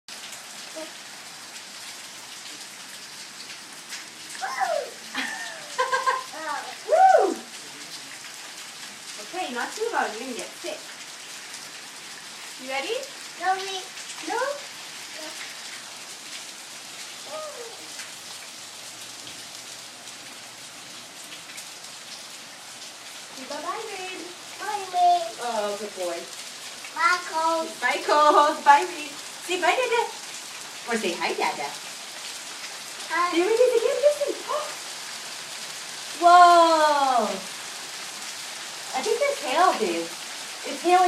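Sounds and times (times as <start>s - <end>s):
steady rain falling: 0.1s - 41.0s
child vocalizing without words: 0.7s - 1.0s, 4.4s - 5.2s, 6.3s - 6.9s, 15.2s - 15.4s, 17.2s - 17.9s
faint voice-like sound: 0.7s - 1.0s, 4.4s - 5.2s, 6.4s - 8.1s, 17.2s - 17.9s.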